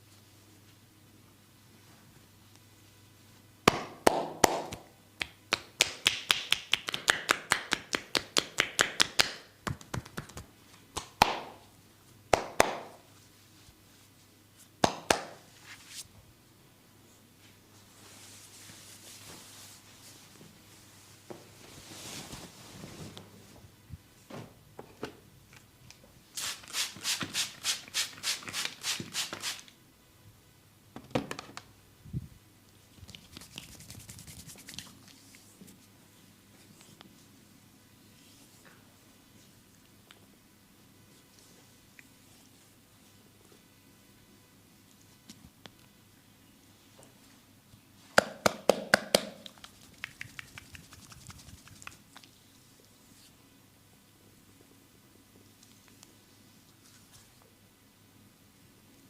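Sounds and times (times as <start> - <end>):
hands slapping body: 3.7 - 11.6, 12.3 - 13.0, 14.8 - 15.4, 48.2 - 52.0.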